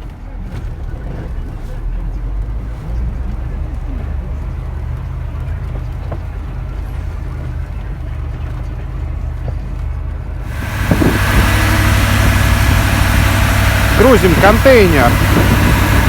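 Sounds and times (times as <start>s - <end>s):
heavy vehicle engine humming: 0.0s - 16.0s
loud hissing: 10.5s - 16.0s.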